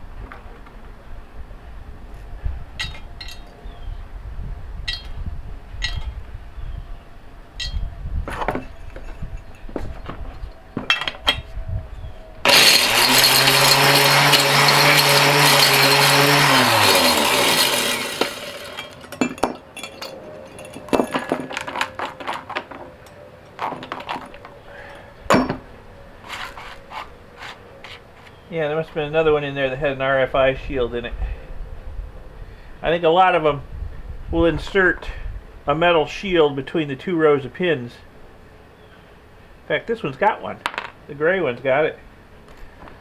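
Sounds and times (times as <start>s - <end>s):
hard small pieces clinking: 2.8s - 3.6s, 7.6s - 9.8s, 12.4s - 25.7s
crusher motor humming: 12.3s - 21.8s
connectors rattling while shredded: 12.4s - 29.8s.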